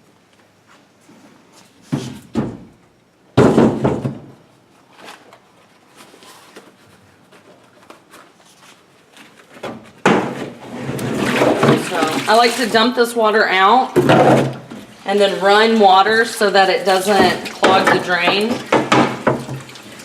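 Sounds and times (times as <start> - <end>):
container clunks and knocks: 3.4 - 4.4, 9.6 - 12.6, 13.9 - 14.9, 17.0 - 19.8.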